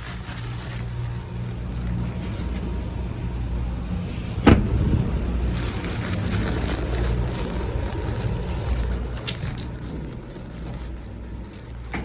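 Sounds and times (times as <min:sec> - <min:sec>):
car low rumble: 0:00.0 - 0:12.0.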